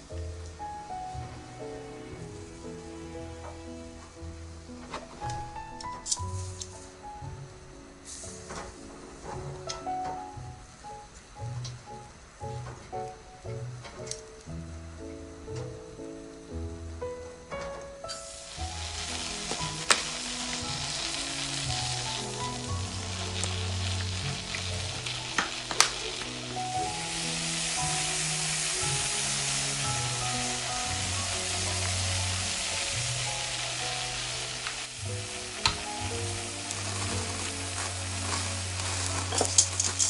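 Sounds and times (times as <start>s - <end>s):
soft background music: 0.0s - 40.0s
scallops sizzling on grill: 18.1s - 40.0s.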